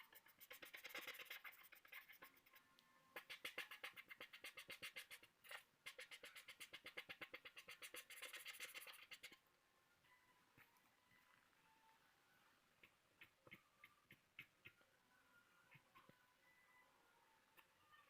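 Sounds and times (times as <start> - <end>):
pencil scratching on paper: 0.0 - 2.6, 3.2 - 9.4.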